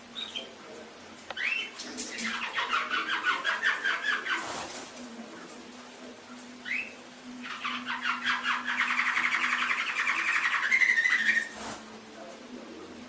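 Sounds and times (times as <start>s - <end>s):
canary singing trills: 0.0s - 0.6s, 1.4s - 4.6s, 6.5s - 11.8s.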